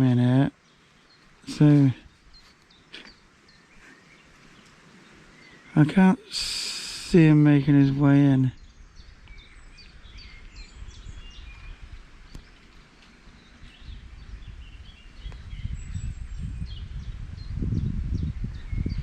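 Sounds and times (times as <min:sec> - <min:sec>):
birds chirping and singing: 0:00.0 - 0:19.0.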